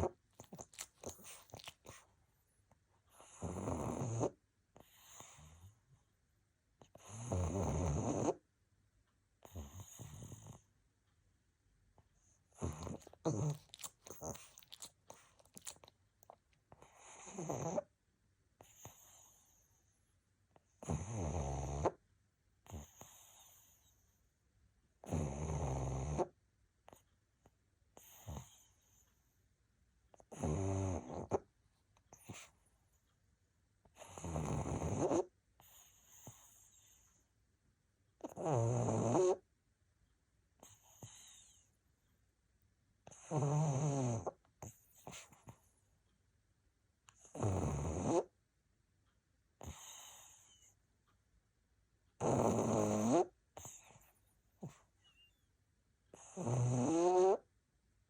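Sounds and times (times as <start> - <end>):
dog snoring: 0.0 - 2.1, 3.1 - 6.0, 6.8 - 8.4, 9.4 - 10.7, 12.2 - 15.9, 16.7 - 17.9, 18.6 - 20.0, 20.6 - 22.0, 22.6 - 24.2, 25.0 - 27.1, 28.0 - 29.4, 30.1 - 31.5, 32.1 - 32.7, 33.9 - 37.2, 38.2 - 39.5, 40.6 - 41.7, 43.0 - 45.7, 47.1 - 48.4, 49.6 - 50.8, 52.2 - 55.3, 56.1 - 57.5
dog snorting: 0.0 - 2.1, 3.1 - 5.7, 6.9 - 8.4, 9.4 - 10.6, 12.5 - 17.9, 20.8 - 22.0, 25.0 - 26.3, 30.2 - 31.4, 32.1 - 32.6, 34.0 - 37.1, 38.2 - 39.4, 43.1 - 45.6, 47.2 - 48.3, 49.6 - 50.7, 52.2 - 54.8, 56.1 - 57.4
clicking and smacking mouth noises: 0.3 - 2.1, 13.0 - 16.7.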